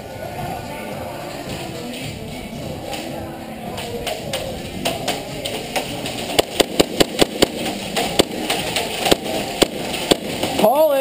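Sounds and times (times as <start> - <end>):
airsoft guns firing: 3.8 - 11.0.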